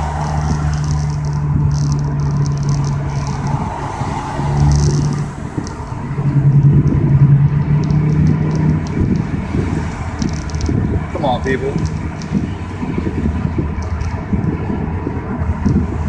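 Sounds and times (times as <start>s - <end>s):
car engine exhaust while driving: 0.0s - 16.0s.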